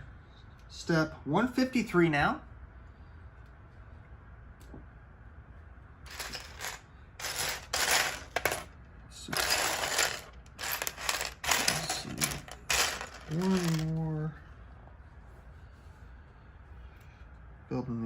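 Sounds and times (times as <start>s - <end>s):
plastic toy bricks rattling: 6.1s - 8.7s, 9.3s - 14.0s.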